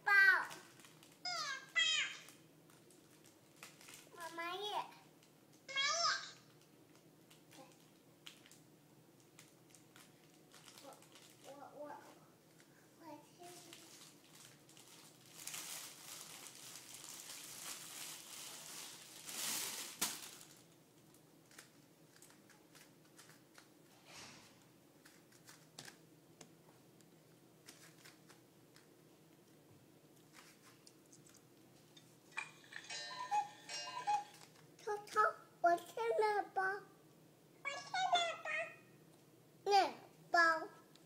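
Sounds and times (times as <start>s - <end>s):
child's voice: 0.0s - 0.7s, 1.3s - 2.3s, 4.1s - 5.1s, 5.7s - 6.4s, 10.8s - 12.3s, 13.0s - 14.0s, 33.3s - 37.0s, 37.7s - 38.9s, 39.7s - 40.9s
soft crinkling rustling: 0.3s - 5.7s, 6.3s - 32.3s.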